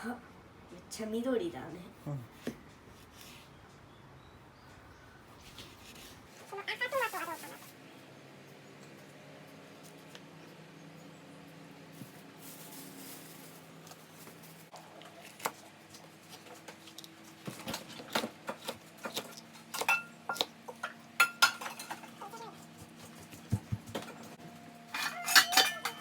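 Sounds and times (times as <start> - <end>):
utensils and dishes clinking: 17.5 - 23.2, 23.9 - 26.0.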